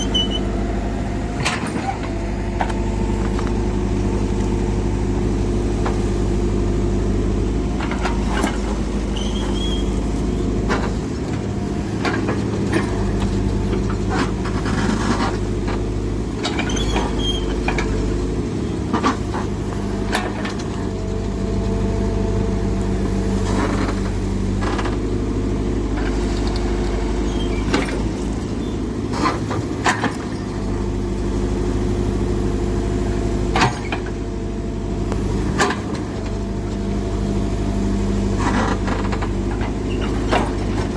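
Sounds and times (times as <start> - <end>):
brief squeaks: 0.0 - 0.5, 9.2 - 10.0
diesel engine running: 0.0 - 40.9.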